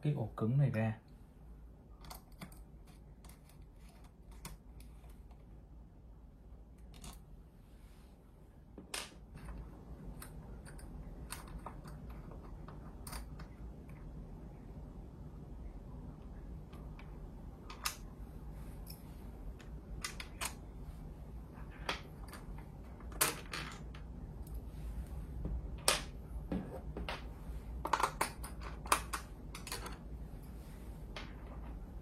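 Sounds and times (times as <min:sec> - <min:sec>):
tools and parts clicking: 0:06.8 - 0:07.2, 0:09.0 - 0:13.6, 0:27.8 - 0:30.0.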